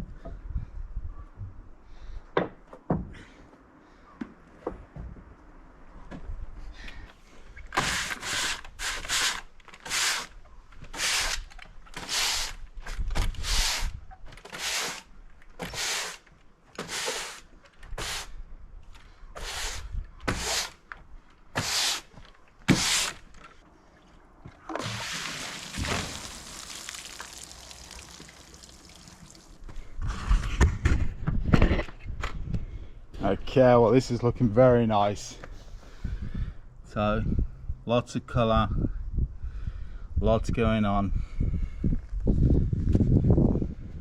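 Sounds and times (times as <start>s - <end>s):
water spray hissing: 24.8s - 29.6s.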